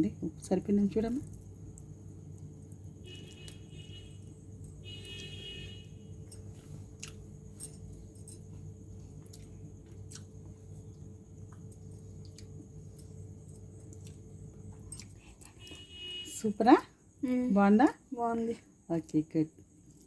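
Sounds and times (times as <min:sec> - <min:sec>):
steady low hum: 0:00.0 - 0:20.0
person chewing: 0:06.8 - 0:07.3, 0:09.1 - 0:10.6, 0:11.5 - 0:12.8, 0:13.8 - 0:15.6.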